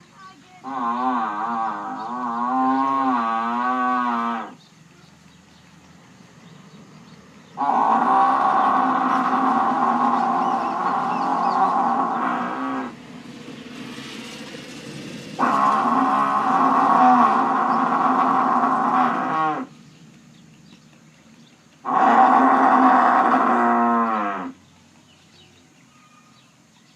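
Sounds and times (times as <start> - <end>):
buffalo mooing: 0.6 - 4.6, 7.6 - 13.0, 15.4 - 19.7, 21.8 - 24.6.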